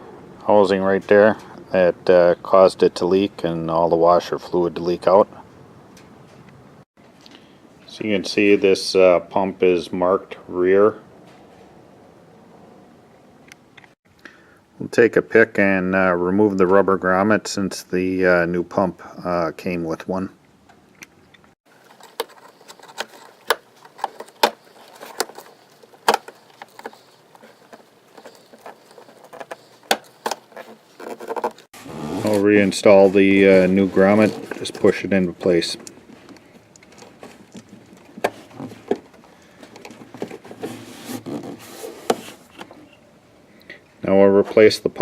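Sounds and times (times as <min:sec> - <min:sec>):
rubber squeaking on plastic: 0:21.8 - 0:35.0, 0:39.9 - 0:42.7.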